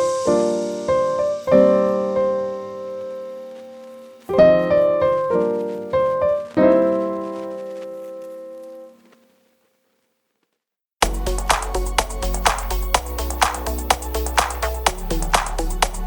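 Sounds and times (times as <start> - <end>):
slow piano chords: 0.0 - 9.0.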